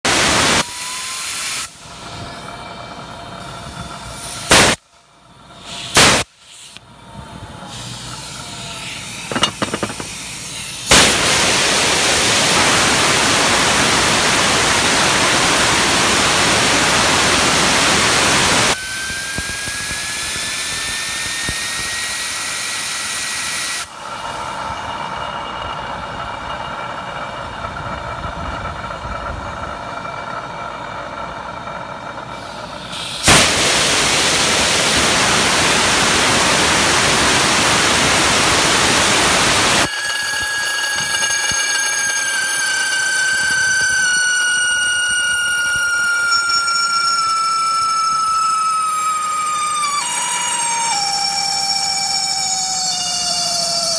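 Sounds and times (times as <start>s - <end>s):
loud steady hiss: 0.1s - 25.2s, 32.4s - 40.0s
bearings whining at high speed: 33.9s - 53.9s.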